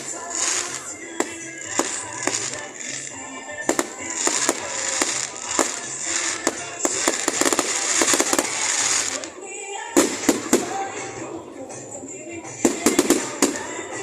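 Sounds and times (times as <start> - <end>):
fireworks bangs and crackles: 0.0 - 9.4, 10.0 - 11.2, 12.5 - 14.0
music: 0.0 - 14.0.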